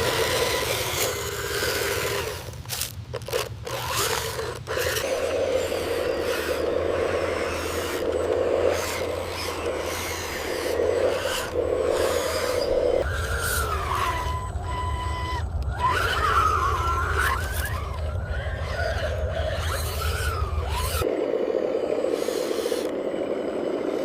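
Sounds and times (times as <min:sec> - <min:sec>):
scraping through soil and gravel: 0:00.0 - 0:14.1
low motor hum: 0:00.0 - 0:24.0.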